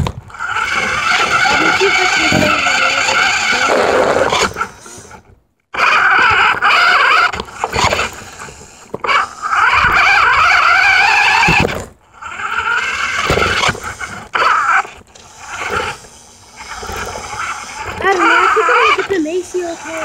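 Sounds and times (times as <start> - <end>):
tyres scraping over pavement: 0.0 - 5.3
toy car electric motor whining: 0.0 - 20.0.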